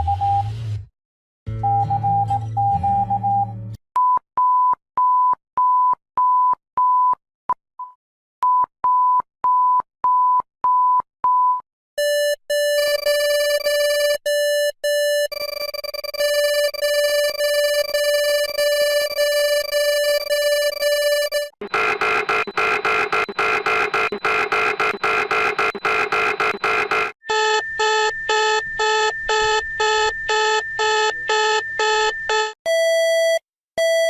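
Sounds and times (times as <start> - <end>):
high electronic beeps: 12.0 - 32.6.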